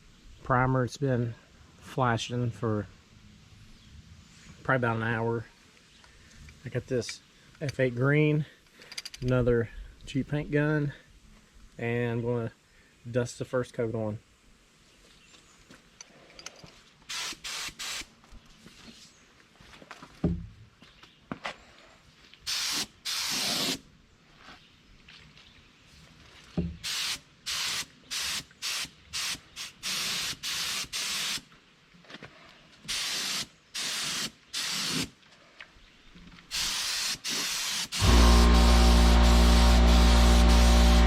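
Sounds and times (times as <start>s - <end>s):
paint spray gun hissing: 17.1s - 18.1s, 22.5s - 23.8s, 26.8s - 31.4s, 32.9s - 35.1s, 36.5s - 41.0s
loud steady hum with tones: 38.0s - 41.0s.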